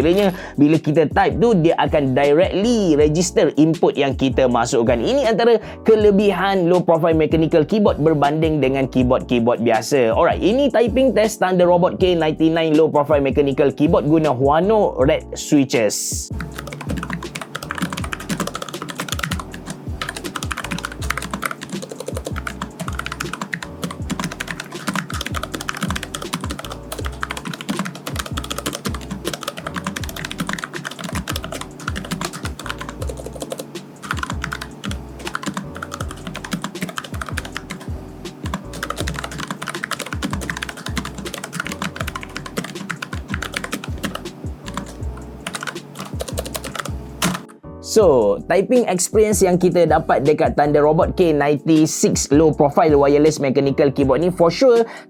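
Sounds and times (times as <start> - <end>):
mechanical keyboard typing: 16.4 - 47.5.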